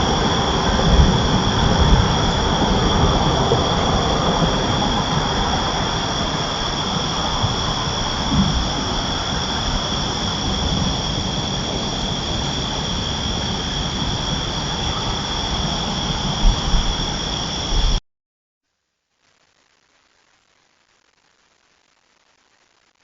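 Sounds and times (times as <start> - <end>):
high wheel squeal: 0.0 - 18.0
train rumble: 0.0 - 18.0.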